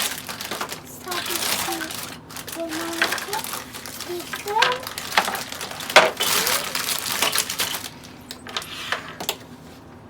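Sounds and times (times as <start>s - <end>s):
plastic pieces clicking and rustling: 0.0s - 9.4s
plastic toy pieces knocking: 2.7s - 7.9s.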